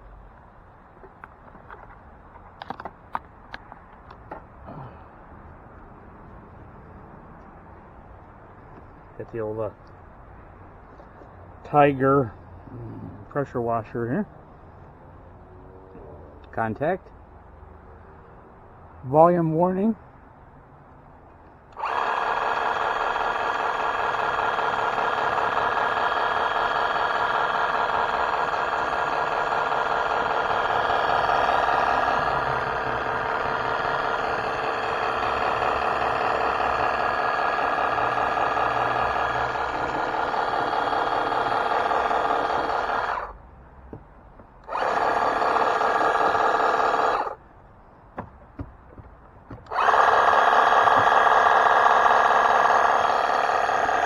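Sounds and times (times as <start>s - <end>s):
pressure washer whining: 21.7s - 43.3s, 44.6s - 47.4s, 49.6s - 54.0s.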